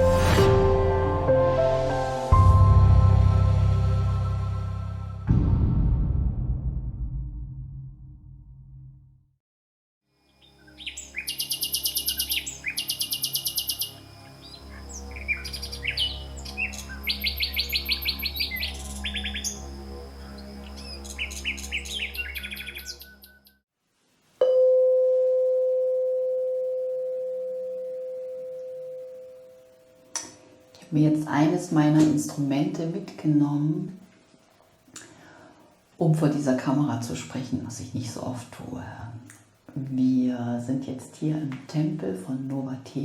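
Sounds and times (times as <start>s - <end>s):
low steady drone: 0.0s - 5.7s
birds singing trills: 10.3s - 23.6s
struck metal tone ringing: 24.4s - 30.2s.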